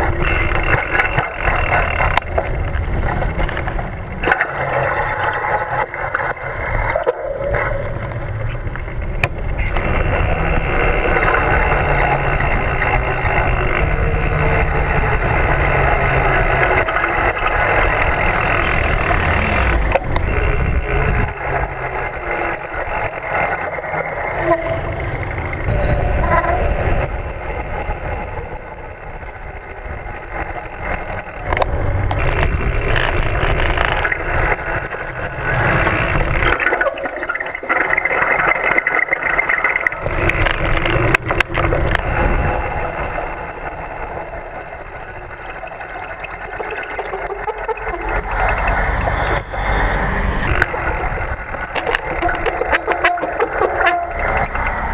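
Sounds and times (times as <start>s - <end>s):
disc brakes squealing: 11.2s - 19.6s, 20.6s - 31.5s, 33.9s - 37.9s, 42.0s - 54.9s.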